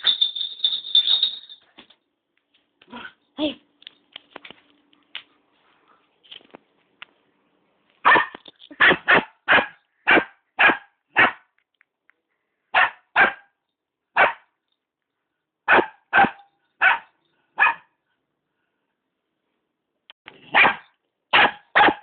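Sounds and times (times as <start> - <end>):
small puppy barking: 8.0 - 11.5, 12.8 - 13.5, 14.2 - 14.4, 15.7 - 17.9, 20.5 - 22.0.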